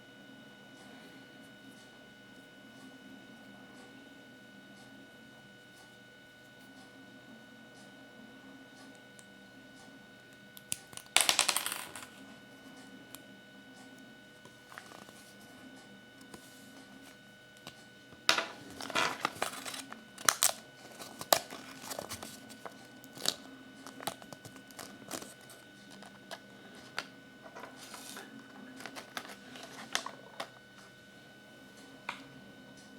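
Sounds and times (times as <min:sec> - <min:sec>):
crinkly wrapper crumpling: 0:18.6 - 0:30.5.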